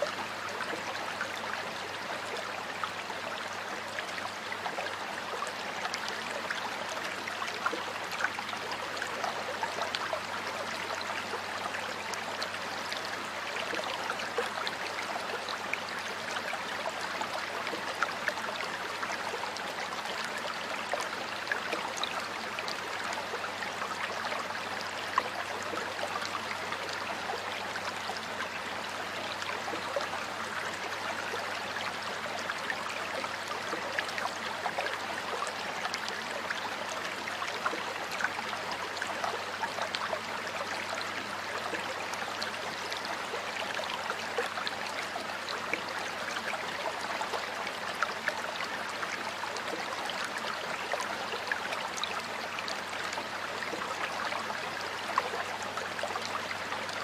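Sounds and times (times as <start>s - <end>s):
stream water flowing over rocks: 0.0s - 57.0s.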